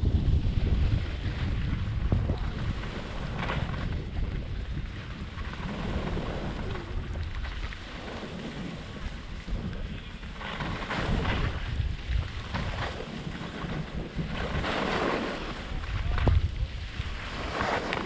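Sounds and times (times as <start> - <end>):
wind buffeting microphone: 0.0 - 18.0.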